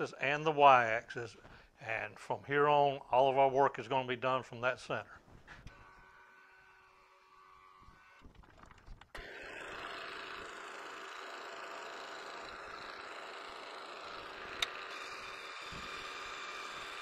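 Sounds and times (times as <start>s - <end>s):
milling machine motor running: 9.1s - 17.0s.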